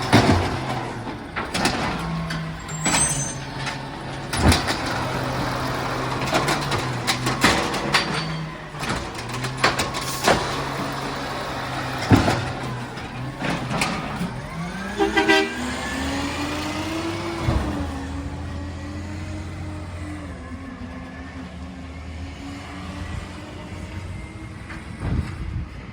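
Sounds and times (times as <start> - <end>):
clanks and knocks: 0.0 - 14.9
truck engine running: 0.0 - 22.1
short horn toots: 15.0 - 15.8.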